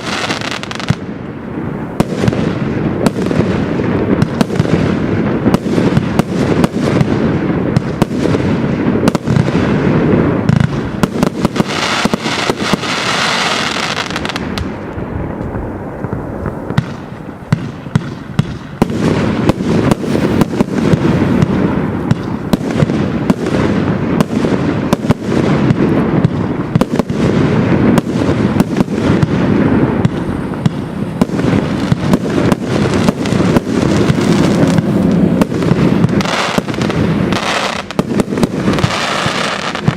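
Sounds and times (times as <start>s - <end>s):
firework barrage shots and bangs: 0.0s - 39.9s
firework hiss: 0.0s - 39.9s.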